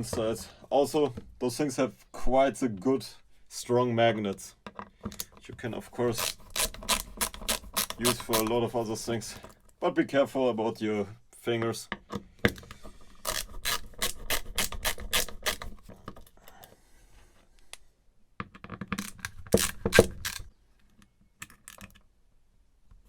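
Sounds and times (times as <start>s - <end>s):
hand tools clicking on metal case: 4.7s - 5.4s, 6.1s - 8.7s.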